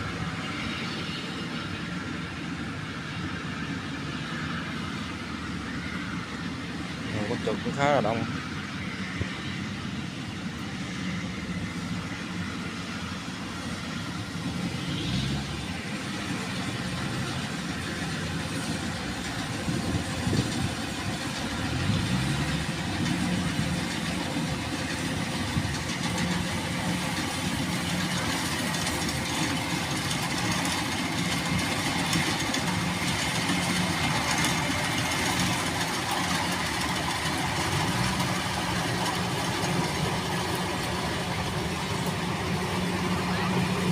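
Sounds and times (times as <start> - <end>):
farm machinery engine running: 0.0 - 43.9.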